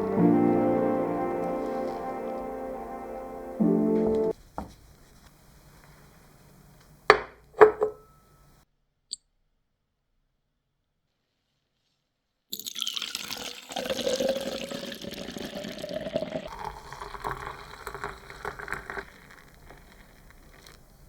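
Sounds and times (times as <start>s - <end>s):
liquid pouring into container: 12.6s - 20.9s.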